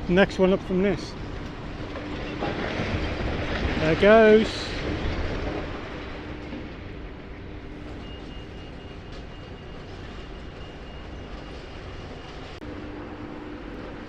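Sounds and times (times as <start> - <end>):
diesel engine rumbling: 0.0 - 14.0
high-pitched reversing beeps: 7.8 - 12.3.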